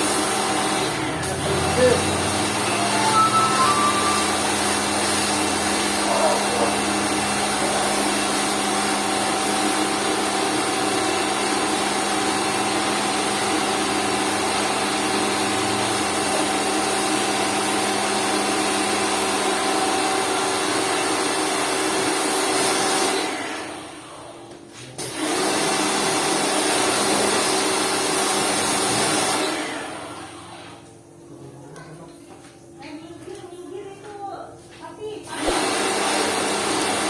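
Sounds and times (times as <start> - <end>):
pressure washer motor hum: 4.4 - 17.1.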